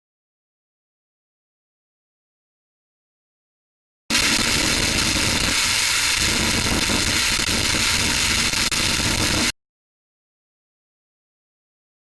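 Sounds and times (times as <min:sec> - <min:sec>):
loud electronic static hiss: 0:04.1 - 0:09.6.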